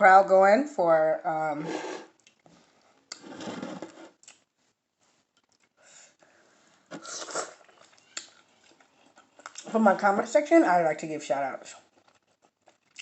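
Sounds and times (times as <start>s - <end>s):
person eating shrimp: 6.9s - 9.7s.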